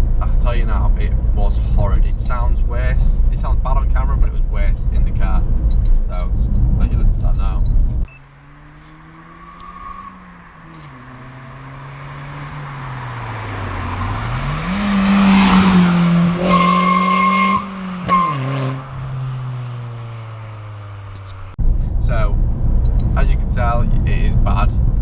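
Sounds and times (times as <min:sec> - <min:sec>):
car engine accelerating: 0:00.0 - 0:25.0
exhaust whistling: 0:07.2 - 0:24.7.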